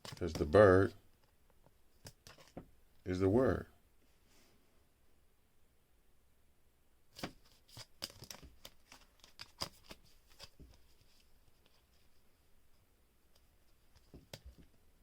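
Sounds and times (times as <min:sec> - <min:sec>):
trading cards clicking and rustling: 0:07.2 - 0:11.0.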